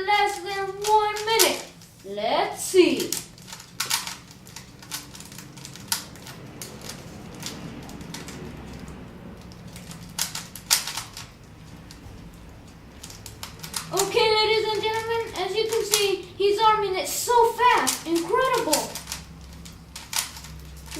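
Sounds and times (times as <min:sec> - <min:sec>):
rubik's cube clicking: 0:03.0 - 0:12.0, 0:14.8 - 0:16.2, 0:17.6 - 0:20.9.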